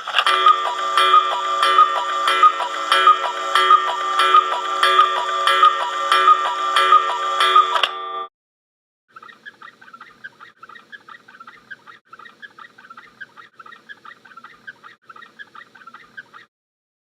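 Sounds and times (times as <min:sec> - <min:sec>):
chickens clucking: 0:09.2 - 0:16.5.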